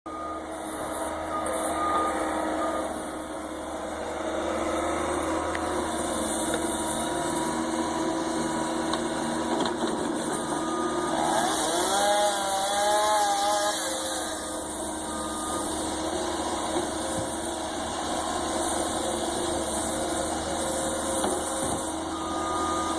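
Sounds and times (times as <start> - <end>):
small engine running: 11.0 - 22.9.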